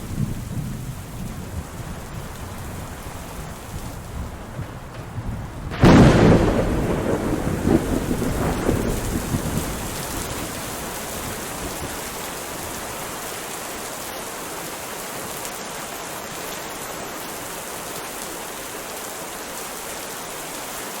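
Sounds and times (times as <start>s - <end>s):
thunder crack and rumbling: 0.0s - 12.9s
steady rain: 0.0s - 21.0s.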